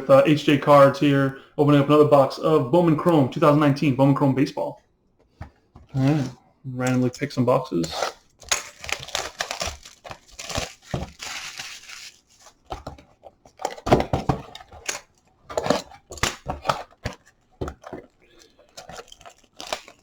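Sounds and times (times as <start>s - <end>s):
packaging tearing and crinkling: 7.8s - 12.7s, 14.5s - 20.0s
cardboard boxes knocking: 13.7s - 14.9s.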